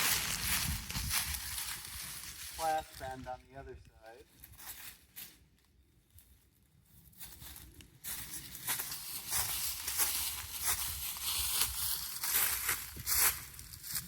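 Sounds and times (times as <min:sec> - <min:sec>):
dry leaves crunching and rustling: 0:00.0 - 0:03.3, 0:06.1 - 0:14.0.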